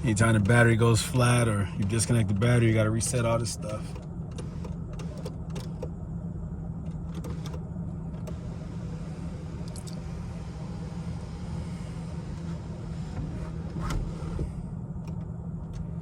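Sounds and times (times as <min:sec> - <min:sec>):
car engine idling: 0:00.0 - 0:16.0
small electric motor running: 0:08.3 - 0:14.4.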